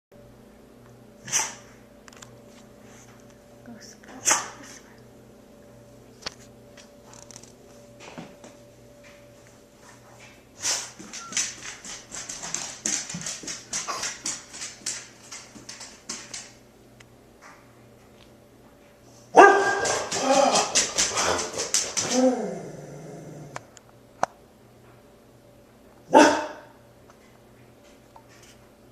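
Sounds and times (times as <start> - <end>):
faint steady hum: 0.2 - 28.9.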